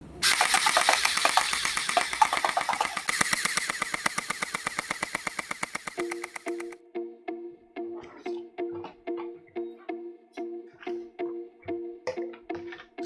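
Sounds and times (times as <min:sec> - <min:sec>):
gel blaster full auto rattle: 0:00.2 - 0:06.8.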